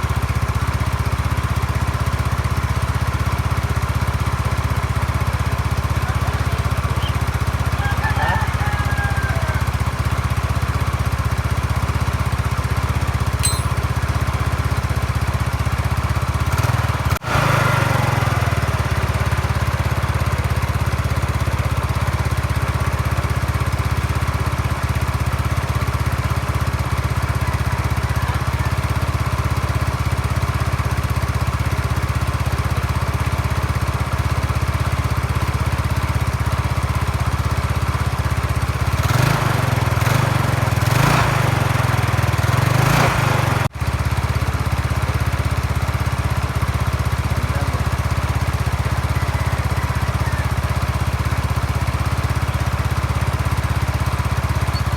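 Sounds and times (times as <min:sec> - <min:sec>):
scooter engine idling: 0:00.0 - 0:54.9
scooter engine revving: 0:16.4 - 0:20.3, 0:37.1 - 0:43.8, 0:45.9 - 0:54.9.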